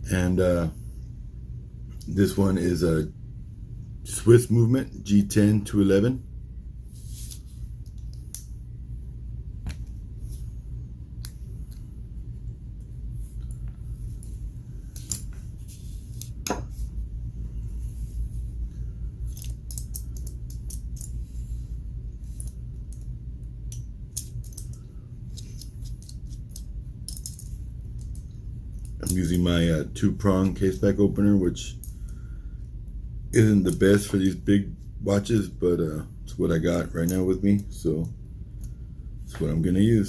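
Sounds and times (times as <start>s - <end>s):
steady low hum: 0.0s - 40.0s
small metallic clicks and clinks: 22.3s - 29.2s.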